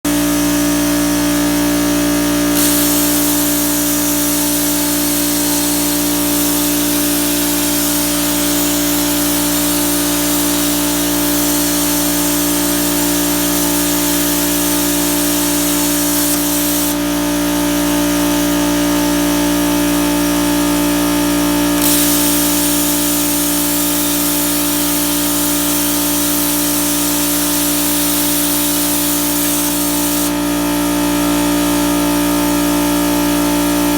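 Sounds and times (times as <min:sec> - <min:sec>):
steady machine hum: 0:00.1 - 0:32.2
plasma arc hissing: 0:02.4 - 0:17.5, 0:21.6 - 0:30.5.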